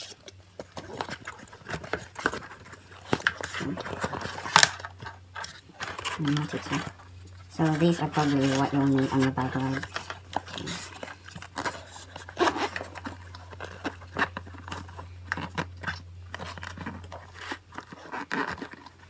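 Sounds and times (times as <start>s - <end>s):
bag handling rustles and clicks: 0.0s - 19.0s
steady low hum: 0.0s - 19.0s.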